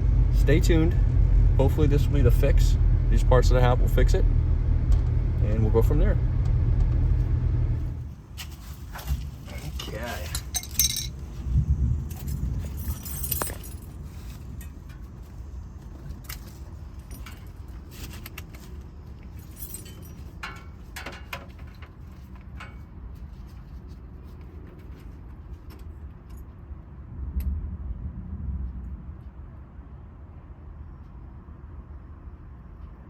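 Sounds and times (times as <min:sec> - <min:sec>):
steady low rumble: 0:00.0 - 0:08.4, 0:09.0 - 0:33.0
metal tools clinking: 0:09.0 - 0:11.4, 0:12.1 - 0:15.2, 0:15.8 - 0:22.9.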